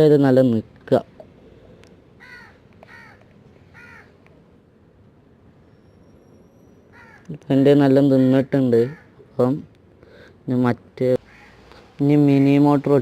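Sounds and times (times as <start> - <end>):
crow cawing: 2.2 - 4.2, 6.9 - 7.4, 8.2 - 9.2, 11.2 - 11.9.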